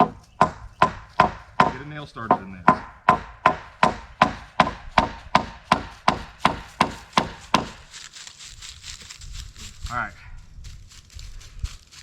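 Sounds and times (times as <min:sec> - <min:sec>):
hammer driving nail into wood: 0:00.0 - 0:07.8.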